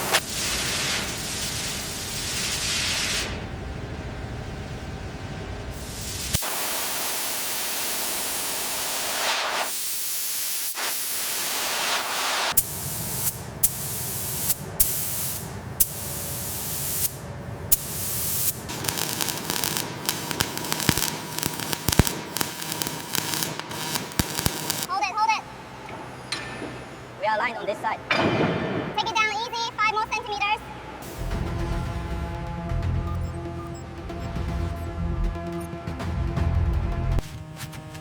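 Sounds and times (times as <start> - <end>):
loud hissing spray: 0.0 - 3.4, 5.8 - 24.9.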